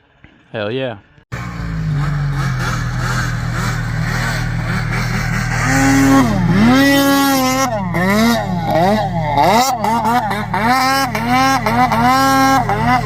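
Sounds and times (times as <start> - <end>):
snowmobile engine running and revving: 1.3 - 13.0.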